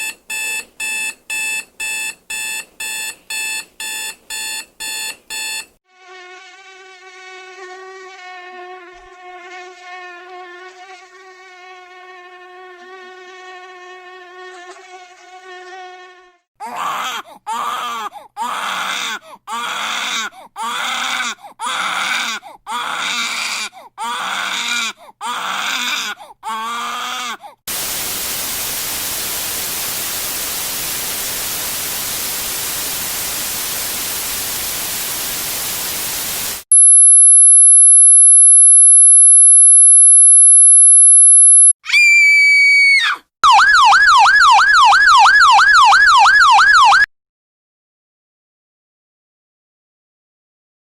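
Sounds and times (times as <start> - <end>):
insect buzz: 5.9 - 16.5, 35.2 - 41.7
baby crying: 16.6 - 27.6
white noise hiss: 27.7 - 36.7
piercing high-pitched tone: 36.7 - 41.8.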